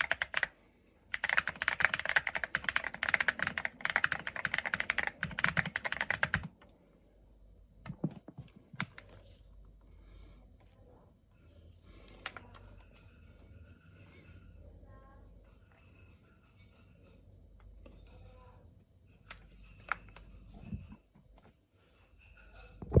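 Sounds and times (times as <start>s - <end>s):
mechanical keyboard typing: 0.0s - 0.5s, 1.1s - 6.6s.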